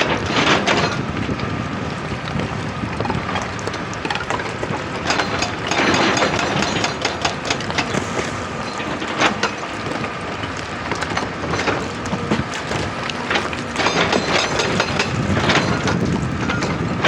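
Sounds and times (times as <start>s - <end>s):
excavator engine and machinery: 0.0s - 17.0s
stones knocking: 3.4s - 16.3s.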